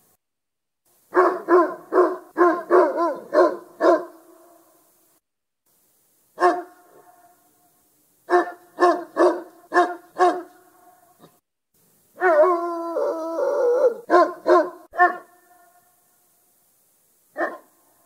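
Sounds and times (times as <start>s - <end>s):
dog barking: 1.1s - 4.2s, 6.4s - 7.3s, 8.3s - 10.6s, 13.8s - 15.8s, 17.3s - 17.8s
dog howling: 12.2s - 15.2s.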